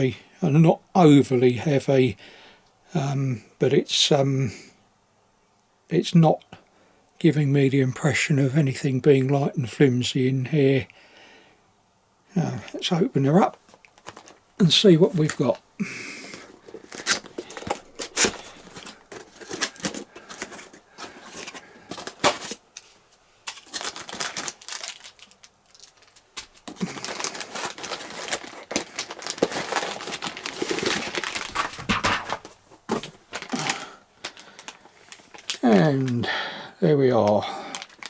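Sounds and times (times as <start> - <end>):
cardboard rustling and crinkling: 13.4 - 36.2, 37.2 - 38.0.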